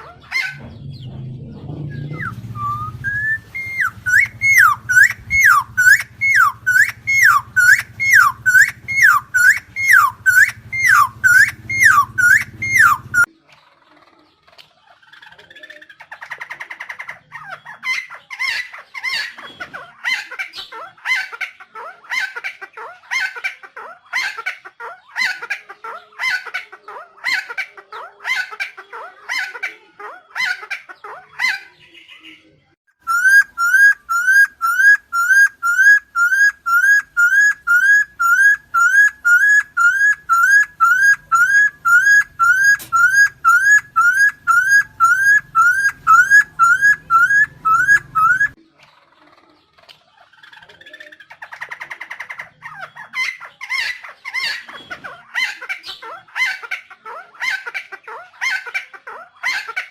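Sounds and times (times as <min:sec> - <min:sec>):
bird harsh calls: 0:00.0 - 0:59.9
rising whistled bird notes: 0:00.4 - 0:13.3, 0:33.0 - 0:48.6.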